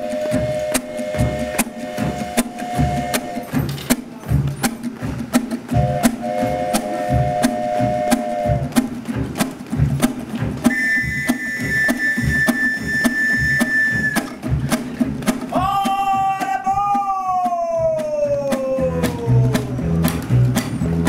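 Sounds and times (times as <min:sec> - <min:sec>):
sliding long note: 0:00.0 - 0:03.6, 0:05.8 - 0:08.7
acoustic band with ukuleles: 0:00.0 - 0:21.0.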